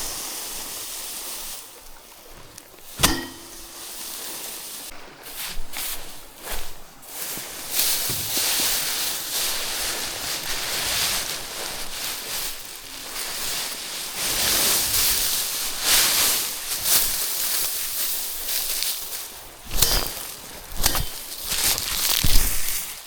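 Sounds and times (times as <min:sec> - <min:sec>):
rice stalks rustling and swishing: 0:00.0 - 0:23.0
sharp knocks: 0:03.0 - 0:03.9.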